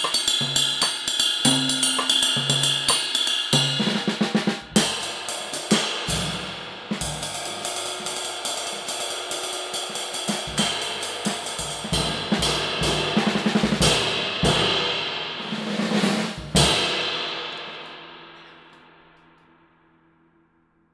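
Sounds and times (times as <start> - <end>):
snare drum: 0.0 - 8.9, 10.0 - 17.9
cymbal ringing: 0.0 - 13.6.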